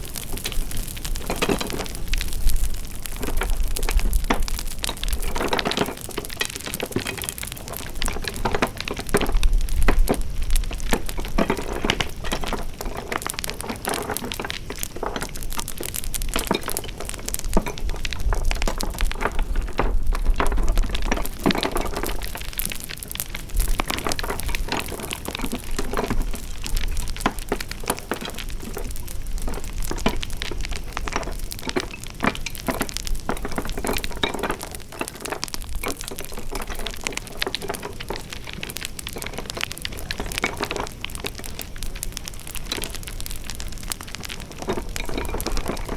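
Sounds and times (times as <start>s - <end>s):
wood fire crackling: 0.0s - 45.9s.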